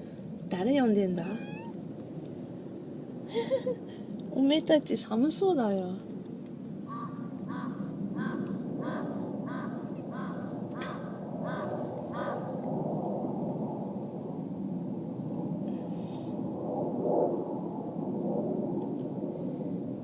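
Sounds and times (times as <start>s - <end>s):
steady low rumble: 0.0s - 20.0s
kitten mewing: 1.2s - 1.8s.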